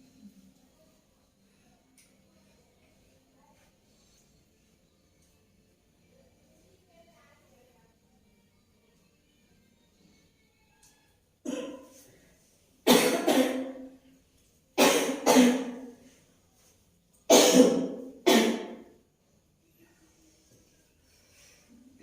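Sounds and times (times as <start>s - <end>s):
woman coughing harshly: 11.5s - 12.0s, 12.9s - 13.9s, 14.8s - 15.9s, 17.3s - 18.9s.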